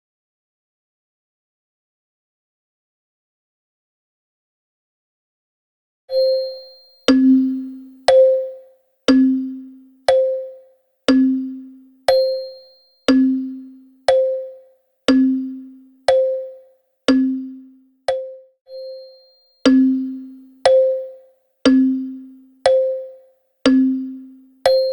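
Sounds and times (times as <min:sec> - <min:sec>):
wall clock ticking: 0:07.1 - 0:18.4, 0:19.6 - 0:24.9.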